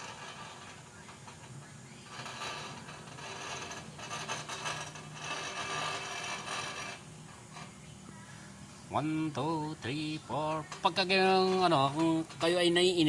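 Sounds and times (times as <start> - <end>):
hand tools ratcheting on metal: 10.5 - 13.0.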